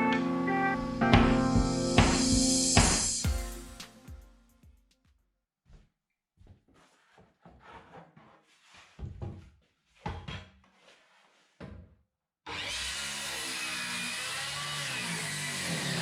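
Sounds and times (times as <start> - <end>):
power tool running: 12.5 - 16.0.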